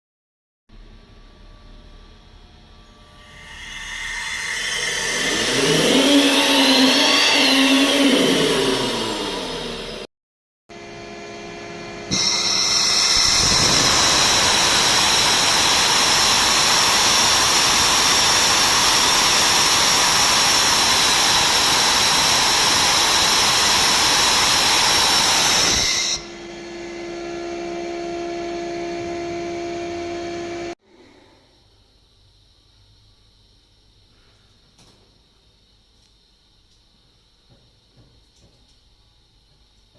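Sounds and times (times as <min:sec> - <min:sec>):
turbocharger whistling air rush: 0:03.3 - 0:10.1, 0:12.1 - 0:30.8.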